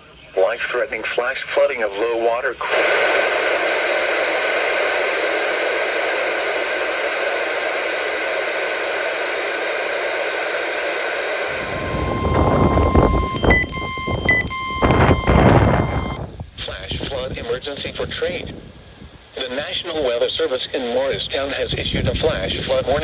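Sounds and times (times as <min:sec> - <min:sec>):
radio static hiss: 0:00.0 - 0:23.0
weather radio alert tone: 0:02.6 - 0:16.3
wind rumble on microphone: 0:11.5 - 0:19.4, 0:21.1 - 0:23.0.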